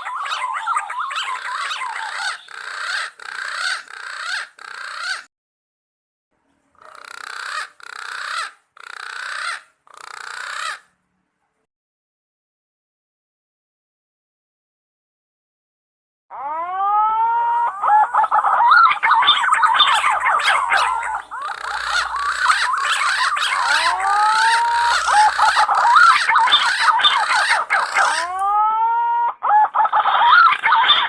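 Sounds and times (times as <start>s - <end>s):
pigeons whistling calls: 0.0s - 5.2s, 16.8s - 31.0s.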